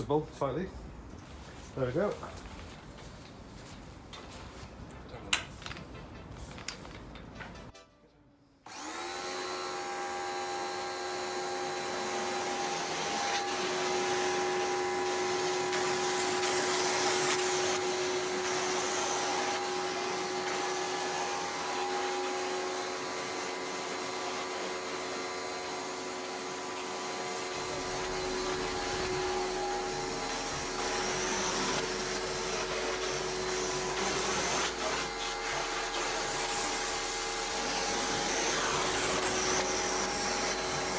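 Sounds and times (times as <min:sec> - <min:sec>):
pressure washer motor whine: 0:08.7 - 0:40.9
water spraying hiss: 0:27.6 - 0:36.3.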